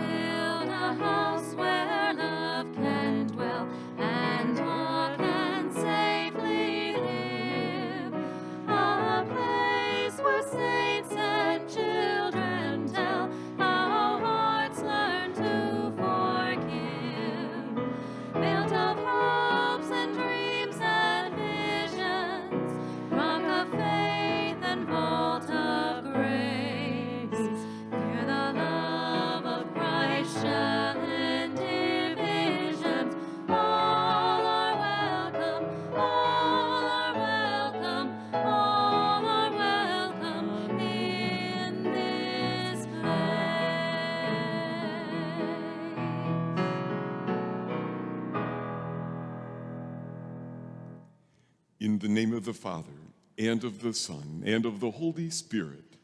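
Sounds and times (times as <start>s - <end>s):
person singing: 51.8s - 55.9s.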